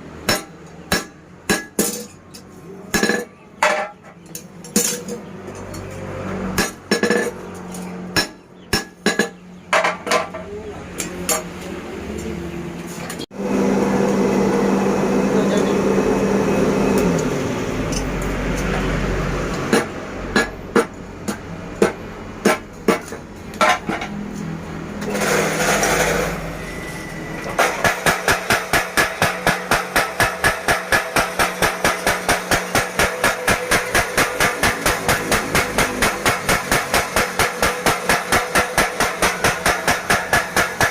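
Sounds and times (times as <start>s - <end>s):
machine hum: 12.6s - 19.4s
power hammer blows: 25.0s - 40.9s.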